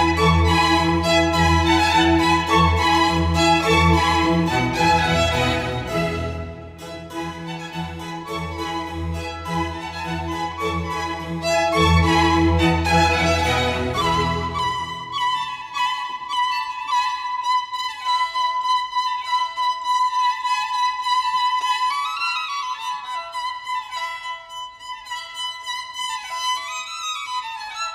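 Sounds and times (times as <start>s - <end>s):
low musical accompaniment: 0.0s - 15.8s
solo violin melody: 0.0s - 27.9s.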